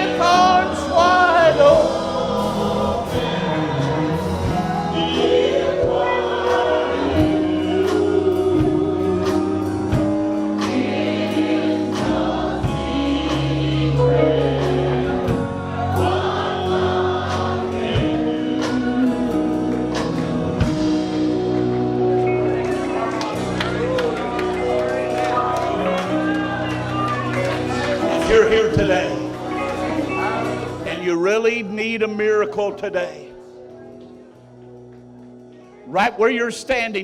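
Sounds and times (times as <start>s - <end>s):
voices singing together: 0.0s - 20.8s
band with bass and drums: 1.6s - 30.9s.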